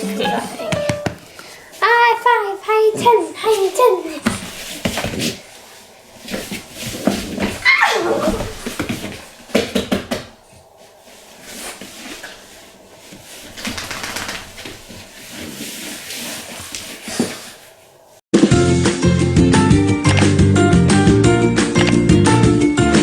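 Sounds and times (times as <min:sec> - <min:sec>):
upbeat music: 0:00.0 - 0:01.2, 0:18.4 - 0:23.0.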